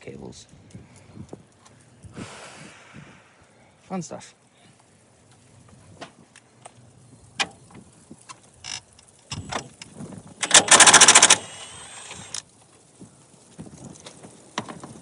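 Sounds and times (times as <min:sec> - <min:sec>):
impact wrench rattling burst: 0:10.4 - 0:12.4.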